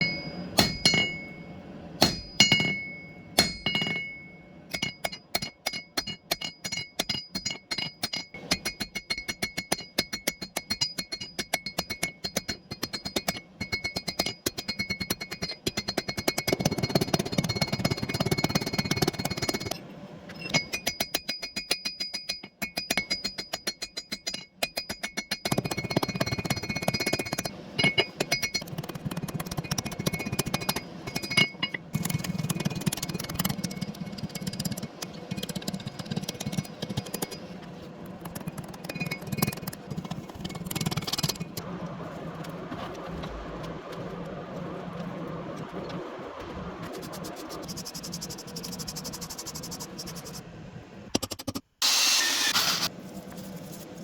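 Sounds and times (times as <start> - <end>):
hammer striking steel on anvil: 0.0 - 19.8.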